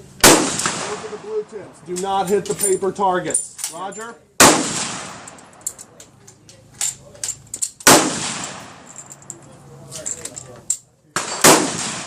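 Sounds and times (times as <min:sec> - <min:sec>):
close gunshot with echo: 0:00.2 - 0:01.4, 0:04.4 - 0:05.3, 0:07.8 - 0:08.9, 0:11.2 - 0:12.0.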